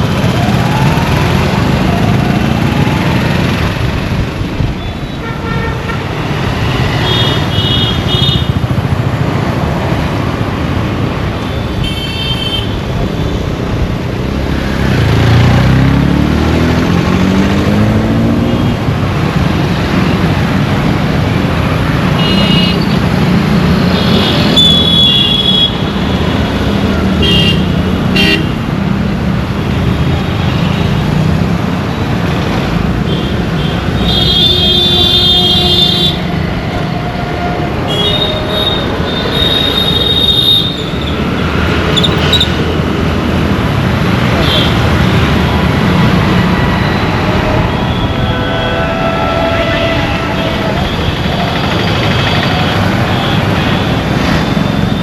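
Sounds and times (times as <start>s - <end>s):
traffic rumble: 0.0s - 55.0s
car horns honking: 46.6s - 54.7s.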